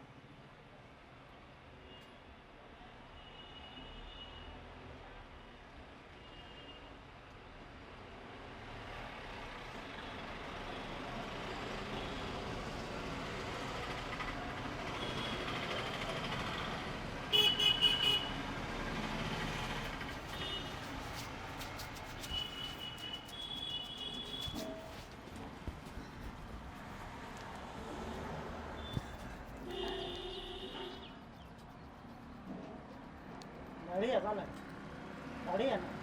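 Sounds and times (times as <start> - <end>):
road traffic: 7.1 - 36.0
car horn honks: 17.3 - 18.3, 20.4 - 20.7, 29.7 - 31.1.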